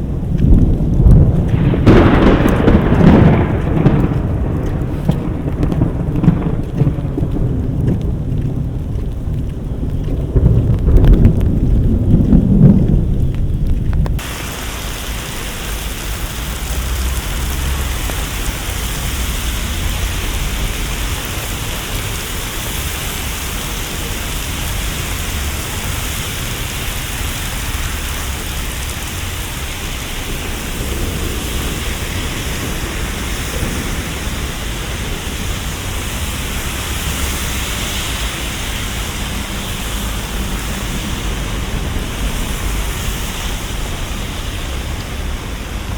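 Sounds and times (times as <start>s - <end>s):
loud low rumble: 0.0s - 45.9s
hiss of rushing water: 14.2s - 45.9s.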